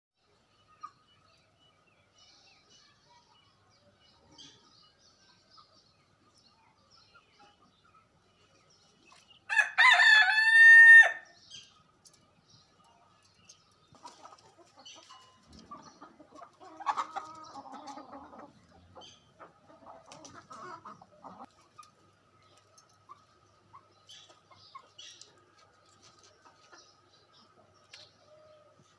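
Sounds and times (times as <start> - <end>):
chickens clucking: 0.3 - 2.2, 2.8 - 10.4, 11.5 - 28.9
rooster crowing: 9.5 - 11.3.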